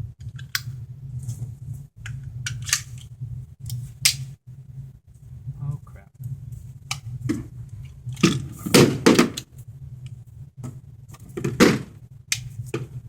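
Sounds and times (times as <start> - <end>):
pistol slide metal clacks: 3.7 - 4.3.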